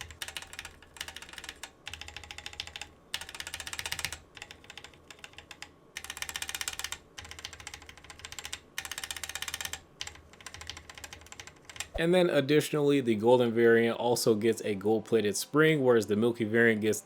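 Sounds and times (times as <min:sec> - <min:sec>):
typing on mechanical keyboard: 0:00.0 - 0:12.0.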